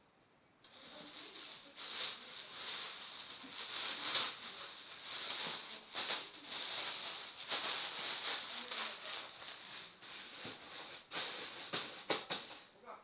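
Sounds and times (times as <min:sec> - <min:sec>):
clothes rustling: 0:00.7 - 0:12.7.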